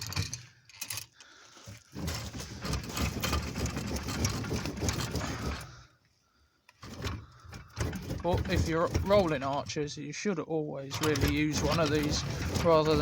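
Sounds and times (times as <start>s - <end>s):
ratcheting rattle: 1.9s - 5.7s, 6.8s - 9.7s, 10.9s - 13.0s.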